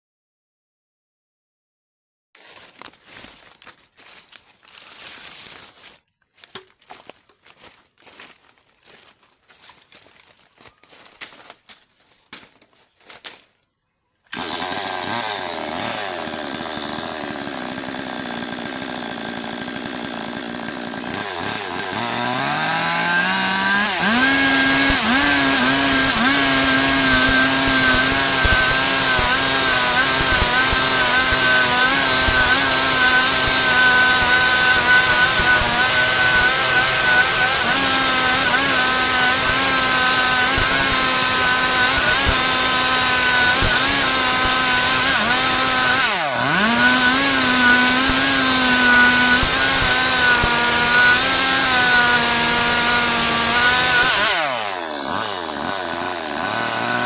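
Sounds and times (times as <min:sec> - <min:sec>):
chainsaw running: 0:14.3 - 0:57.0.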